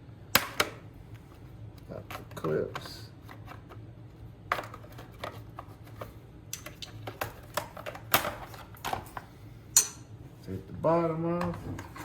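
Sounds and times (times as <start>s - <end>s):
steady low hum: 0.0s - 12.0s
clicks and knocks of parts handled: 4.5s - 10.0s.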